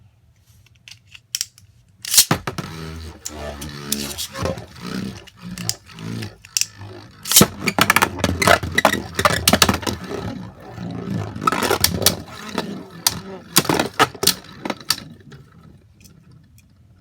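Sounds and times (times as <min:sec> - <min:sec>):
spinning tops clashing: 0:02.1 - 0:15.1.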